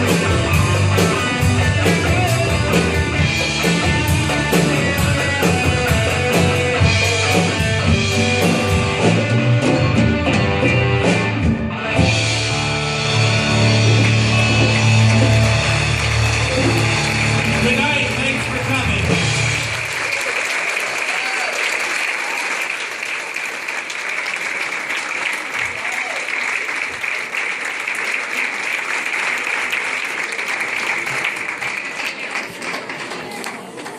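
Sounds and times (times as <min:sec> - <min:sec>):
electric guitar: 0:00.0 - 0:19.9
drum kit beat: 0:00.0 - 0:20.0
audience applauding: 0:12.2 - 0:33.9.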